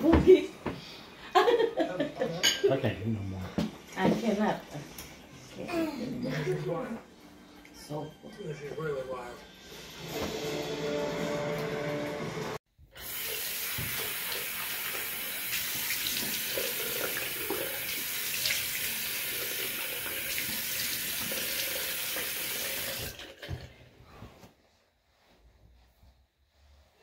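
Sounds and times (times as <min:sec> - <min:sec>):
tap water running into sink: 0:13.0 - 0:23.7.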